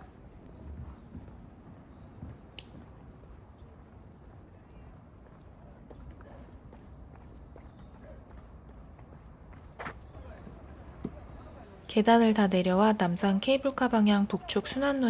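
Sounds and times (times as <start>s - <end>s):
crickets chirring: 0.1s - 15.0s
soft footsteps: 0.5s - 3.0s, 4.8s - 11.6s.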